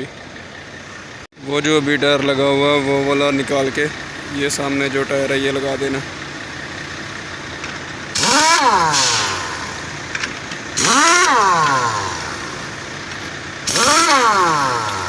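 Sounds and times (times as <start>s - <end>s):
pneumatic impact wrench: 8.1s - 15.0s.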